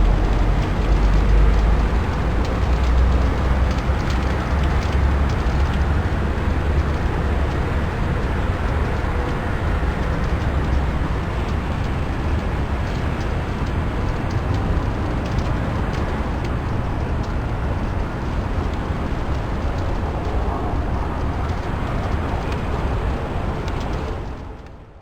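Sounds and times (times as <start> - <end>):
deep rumble: 0.0 - 9.2
steady rain: 0.0 - 25.0.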